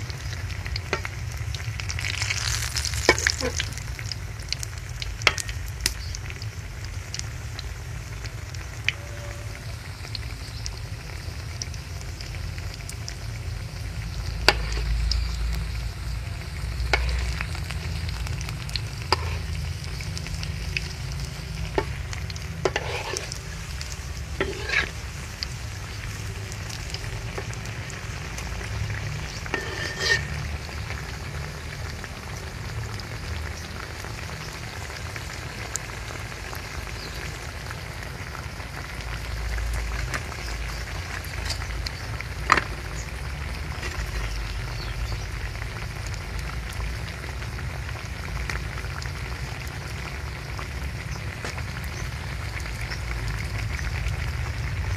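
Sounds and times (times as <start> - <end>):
food sizzling in hot oil: 0.0 - 54.9
utensil scraping a pan: 14.5 - 14.9, 16.9 - 17.5, 19.0 - 19.5, 21.7 - 25.5, 29.4 - 30.5, 43.7 - 44.4.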